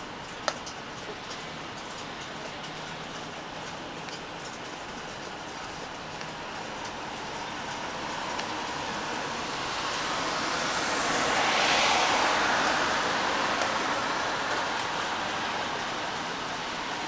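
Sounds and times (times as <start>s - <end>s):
steady rain falling: 0.0s - 17.0s
passing vehicle hiss: 7.9s - 17.0s.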